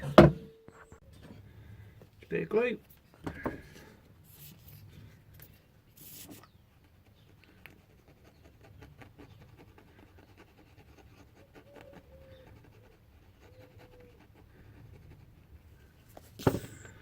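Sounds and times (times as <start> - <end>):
faint scratching and clicks: 3.8 - 15.4.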